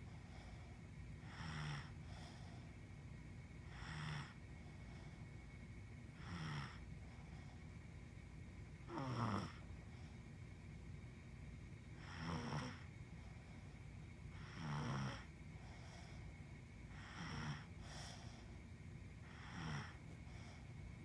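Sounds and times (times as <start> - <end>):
soft slow snoring: 0.0 - 2.6, 3.6 - 5.2, 6.1 - 7.4, 8.8 - 9.7, 12.0 - 12.9, 14.3 - 16.3, 16.9 - 18.6, 19.2 - 20.6.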